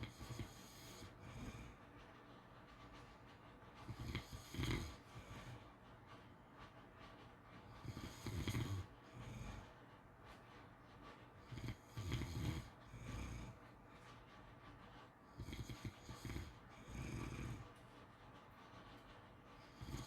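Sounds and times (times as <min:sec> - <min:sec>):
dog snoring: 0:00.0 - 0:01.8, 0:03.8 - 0:05.6, 0:07.7 - 0:09.8, 0:11.4 - 0:13.6, 0:15.3 - 0:17.8, 0:19.6 - 0:20.0
dog breathing softly: 0:00.0 - 0:20.0.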